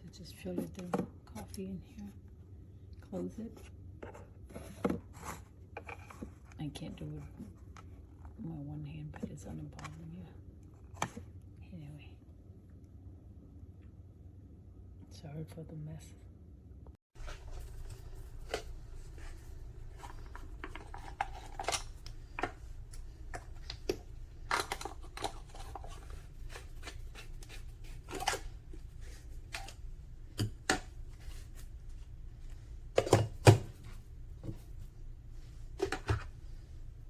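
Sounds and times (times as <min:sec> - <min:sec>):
clicks and taps handling parts: 0:17.2 - 0:37.0.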